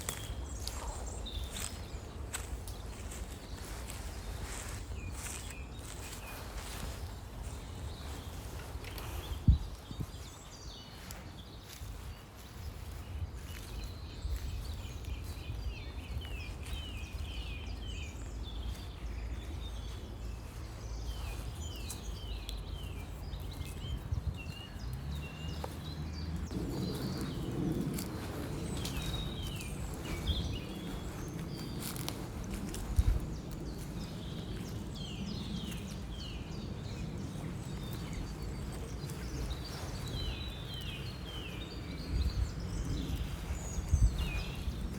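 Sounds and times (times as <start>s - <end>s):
birds chirping: 0.0s - 44.9s
steady low rumble: 11.7s - 44.9s.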